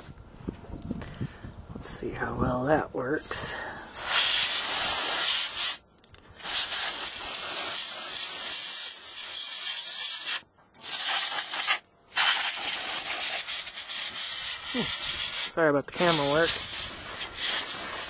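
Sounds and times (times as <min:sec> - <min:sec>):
compressed air spraying: 0:03.6 - 0:05.8, 0:06.4 - 0:18.0.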